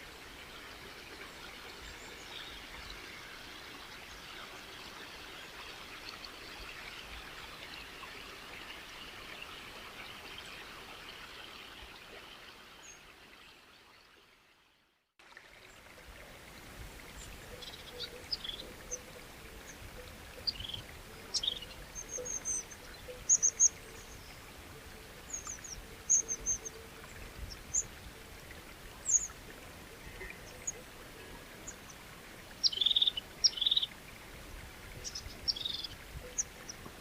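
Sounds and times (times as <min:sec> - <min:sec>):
running water stream: 0:00.0 - 0:37.0.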